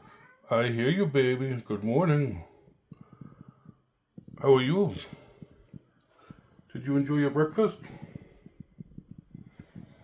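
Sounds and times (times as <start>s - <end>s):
soft clicks and taps: 7.9s - 10.0s.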